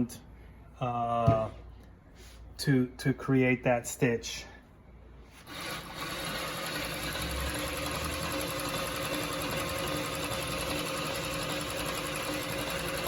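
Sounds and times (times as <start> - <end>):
sewing machine running: 5.4 - 13.0.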